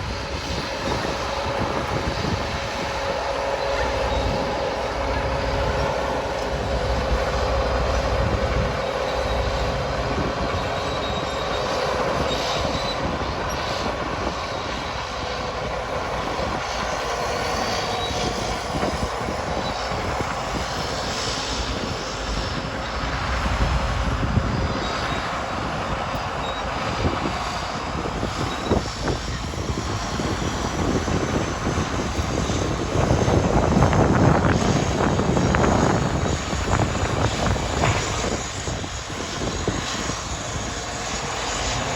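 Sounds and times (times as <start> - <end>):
diesel engine working: 0.0 - 41.9
high squeal of steel tracks: 0.0 - 41.9.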